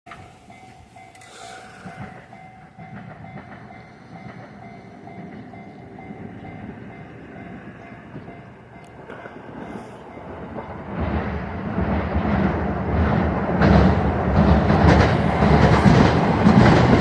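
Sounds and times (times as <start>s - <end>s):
level crossing alarm ringing: 0.1s - 9.0s
train rumbling over crossing: 0.1s - 17.0s.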